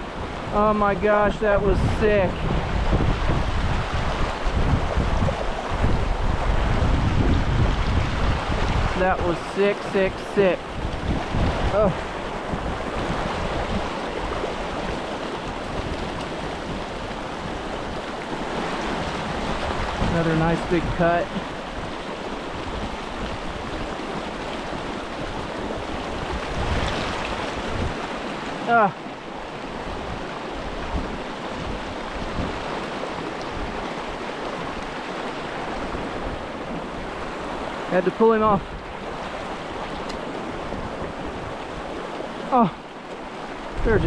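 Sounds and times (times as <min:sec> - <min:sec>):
creek water running: 0:00.0 - 0:44.0.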